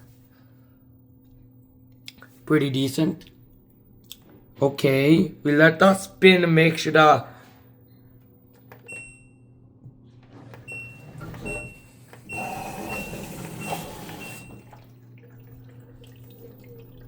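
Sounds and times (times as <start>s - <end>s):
washing machine motor hum: 8.6s - 17.0s.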